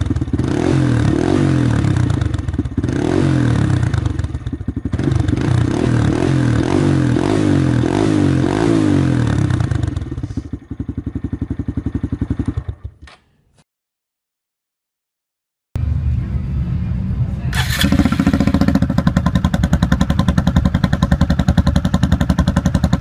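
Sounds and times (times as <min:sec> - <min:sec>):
motorcycle engine revving: 0:00.0 - 0:13.1, 0:17.5 - 0:23.0.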